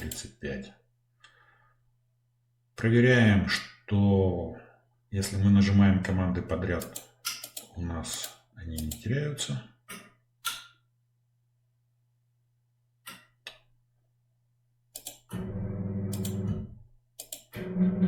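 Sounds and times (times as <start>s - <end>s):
computer mouse clicks: 6.8s - 9.1s, 14.9s - 15.3s, 16.1s - 16.4s, 17.2s - 17.5s
electric blind motor humming: 15.3s - 16.7s, 17.6s - 18.0s.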